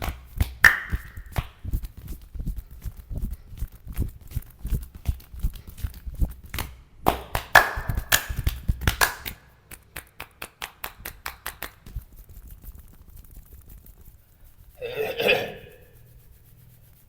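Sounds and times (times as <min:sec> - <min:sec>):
hands slapping on body: 0:00.0 - 0:14.0
light fast tapping: 0:10.8 - 0:14.8.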